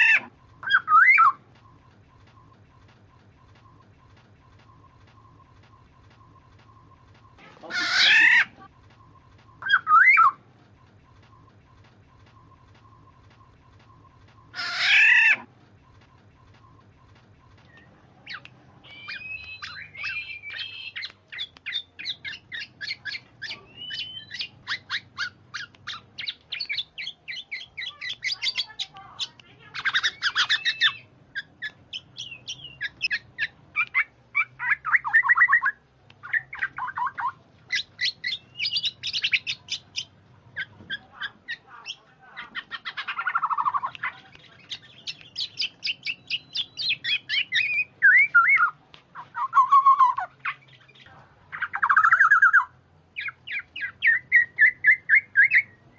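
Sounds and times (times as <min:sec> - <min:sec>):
birds squawking: 0:00.0 - 0:02.5, 0:06.0 - 0:10.4, 0:13.9 - 0:15.6, 0:18.2 - 0:55.7
birds chirping: 0:00.0 - 0:55.9.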